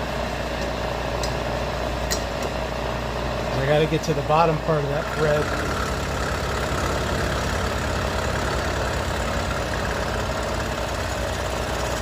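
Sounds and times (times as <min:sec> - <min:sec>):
milling machine cutting metal: 0:05.0 - 0:12.0.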